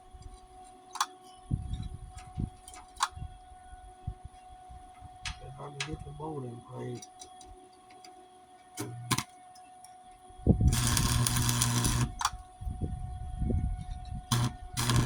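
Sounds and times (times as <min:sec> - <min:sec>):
electric welder arc crackling: 0:08.8 - 0:09.3, 0:10.7 - 0:12.4, 0:14.3 - 0:15.0.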